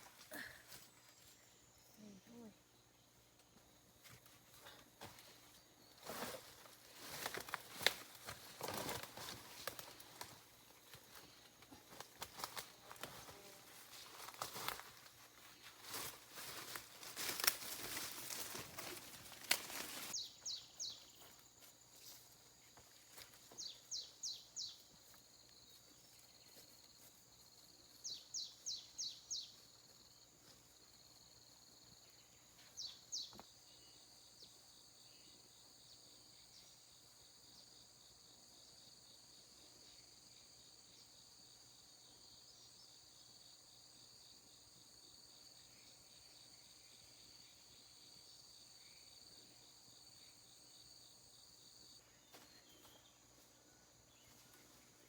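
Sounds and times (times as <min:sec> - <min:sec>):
insects droning: 0:00.0 - 0:55.0
rustling: 0:06.0 - 0:11.1, 0:11.7 - 0:20.2.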